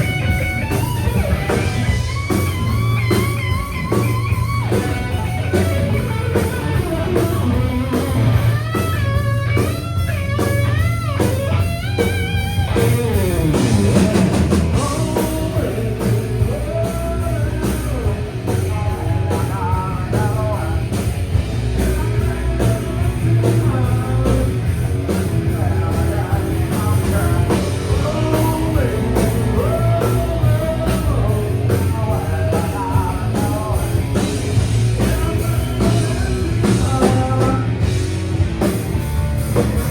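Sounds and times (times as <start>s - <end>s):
electric guitar lead: 0.0s - 39.9s
rock band playing: 0.0s - 39.9s
person singing: 13.2s - 37.9s.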